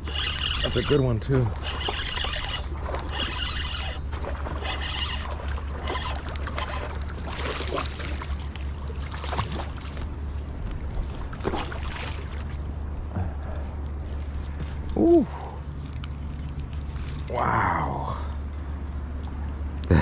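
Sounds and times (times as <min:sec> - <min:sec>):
water splashing and sloshing: 0:00.0 - 0:19.9
steady low rumble: 0:05.4 - 0:20.0.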